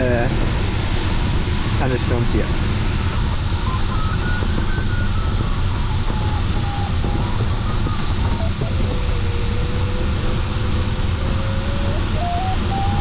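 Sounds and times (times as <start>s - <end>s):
airflow rush in cockpit: 0.0s - 13.0s
electronic tone stepping in pitch: 3.2s - 13.0s.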